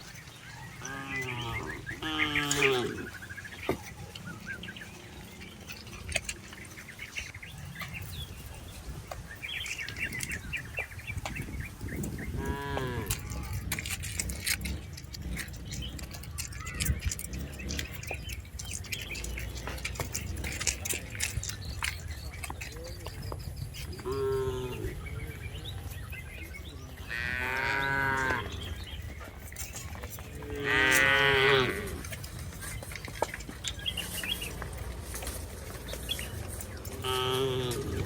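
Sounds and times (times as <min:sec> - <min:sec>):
cattle mooing: 0:00.8 - 0:03.2, 0:12.4 - 0:13.7, 0:24.0 - 0:25.0, 0:27.1 - 0:28.6, 0:30.4 - 0:32.1, 0:36.9 - 0:38.0.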